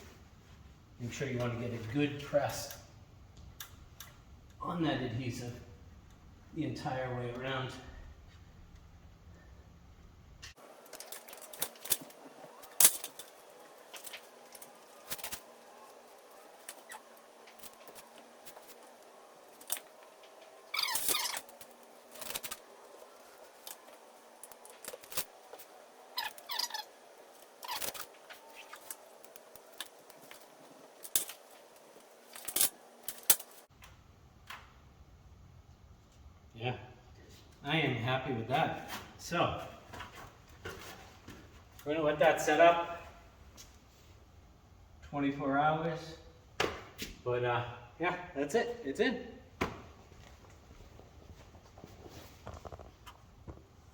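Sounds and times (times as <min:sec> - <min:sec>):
short squeaks: 0:11.1 - 0:33.6.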